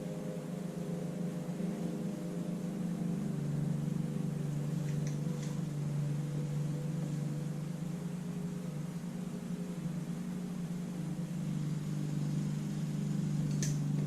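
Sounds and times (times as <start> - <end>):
machine hum: 0.0 - 14.0
faint clicks: 13.5 - 14.0.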